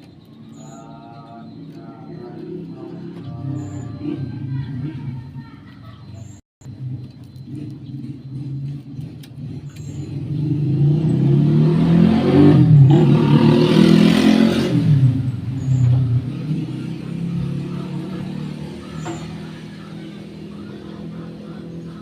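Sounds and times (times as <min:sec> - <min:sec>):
motor vehicle passing: 0:00.0 - 0:22.0.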